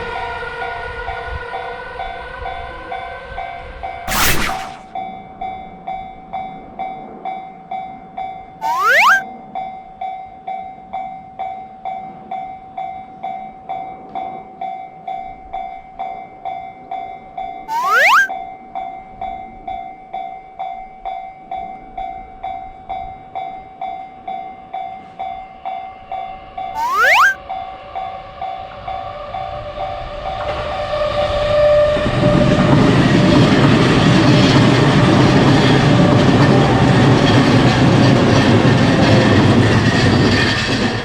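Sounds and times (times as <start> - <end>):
rising whistle sweep: 4.1 - 4.9, 8.6 - 9.2, 17.7 - 18.3, 26.8 - 27.4
train passing: 27.4 - 41.0.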